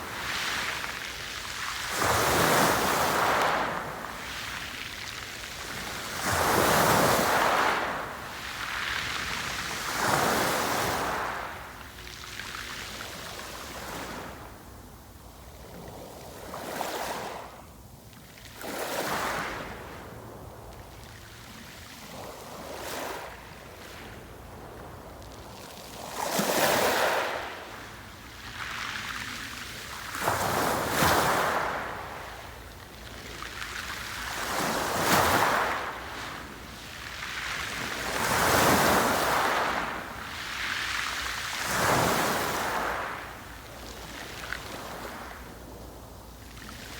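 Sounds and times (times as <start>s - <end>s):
sea waves breaking ashore: 0.0s - 12.4s, 33.3s - 46.9s.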